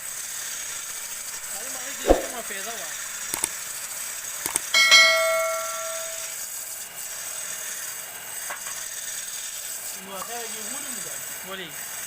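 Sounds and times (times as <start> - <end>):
steady workshop hiss: 6.6 - 12.0.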